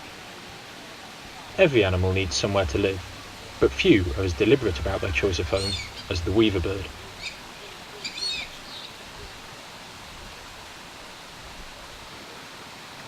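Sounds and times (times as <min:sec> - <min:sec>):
background hiss: 0:00.0 - 0:13.0
bird chirping: 0:01.9 - 0:09.0.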